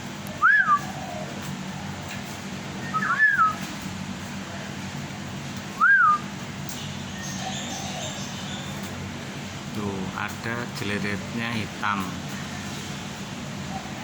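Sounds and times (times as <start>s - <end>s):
whistled notes: 0.4s - 0.9s, 2.8s - 3.6s, 5.8s - 6.2s.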